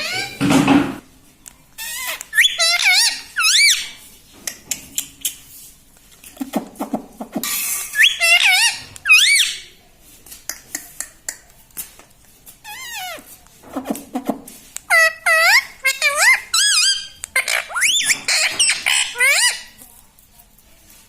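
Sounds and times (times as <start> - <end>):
parakeet squeaking calls: 0.0 - 0.4, 1.8 - 4.0, 7.5 - 9.7, 12.6 - 13.3, 14.9 - 19.8
parakeet chattering: 1.8 - 3.9, 7.4 - 9.6, 14.9 - 19.8.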